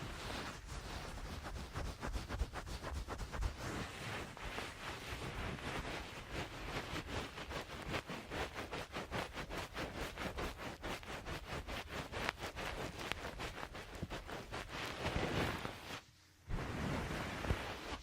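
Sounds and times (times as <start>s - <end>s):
towel patting on microphone: 0.0s - 18.0s
towel rubbing swish: 0.0s - 18.0s.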